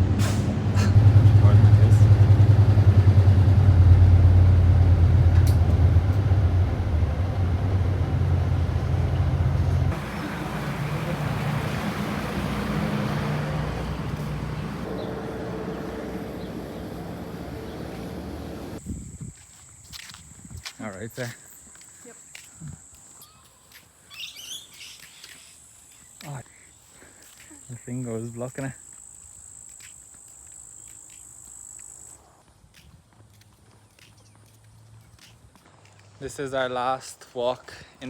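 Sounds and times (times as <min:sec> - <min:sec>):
vehicle engine and road noise: 0:00.0 - 0:19.3, 0:32.6 - 0:37.6.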